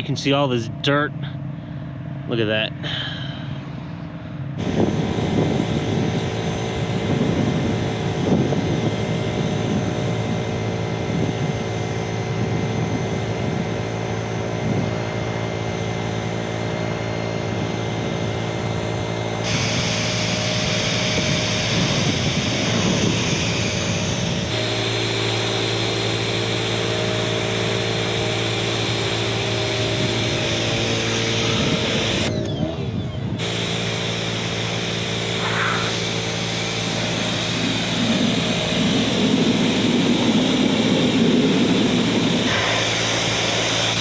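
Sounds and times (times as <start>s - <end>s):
motor drone: 0.7s - 44.0s
pressure washer jet hissing: 19.3s - 32.3s, 33.4s - 44.0s.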